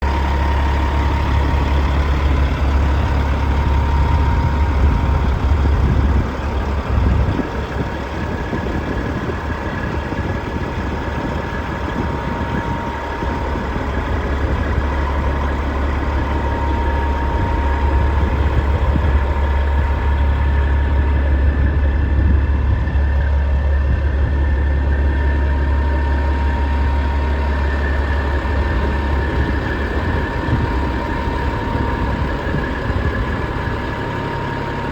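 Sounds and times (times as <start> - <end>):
diesel truck idling: 0.0 - 34.9.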